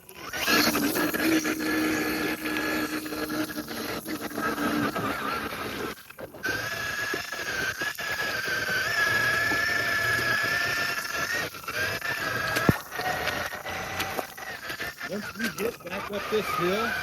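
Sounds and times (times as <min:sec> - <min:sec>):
electric motor whining: 0:00.0 - 0:17.0.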